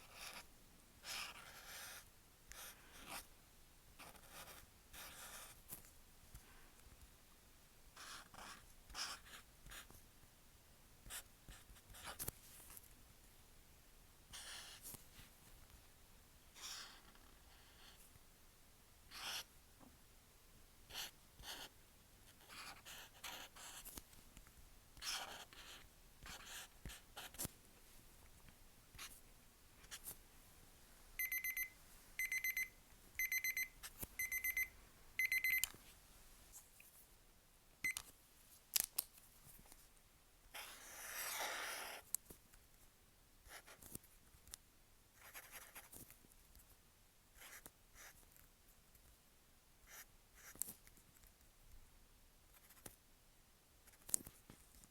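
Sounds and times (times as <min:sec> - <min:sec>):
marker scratching on paper: 0:00.0 - 0:03.3, 0:04.0 - 0:05.6, 0:08.0 - 0:09.9, 0:11.1 - 0:12.2, 0:14.3 - 0:15.0, 0:16.6 - 0:18.0, 0:19.1 - 0:19.5, 0:20.9 - 0:21.7, 0:22.3 - 0:24.0, 0:25.0 - 0:27.5, 0:40.6 - 0:42.0, 0:45.2 - 0:45.9
timer alarm beeping: 0:31.2 - 0:35.7.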